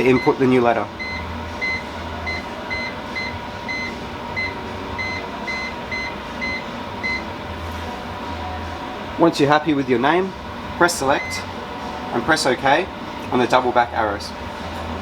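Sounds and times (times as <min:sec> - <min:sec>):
oven control panel beeps: 0:00.0 - 0:07.3, 0:11.1 - 0:11.5
steady hum: 0:00.0 - 0:15.0.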